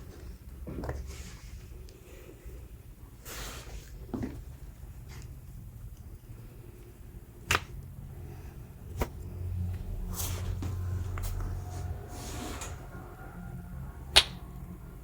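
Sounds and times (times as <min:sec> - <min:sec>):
low rumble: 0:08.0 - 0:15.0.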